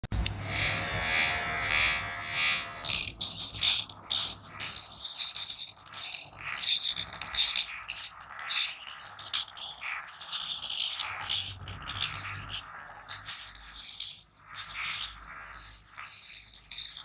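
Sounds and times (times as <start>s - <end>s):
grinder disc scraping: 0.0s - 5.8s
small electric motor whining: 0.0s - 6.7s.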